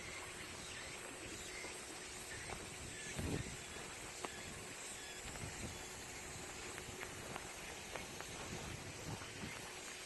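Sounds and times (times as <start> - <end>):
outdoor background hiss: 0.0 - 10.0
faint ticks: 4.0 - 10.0.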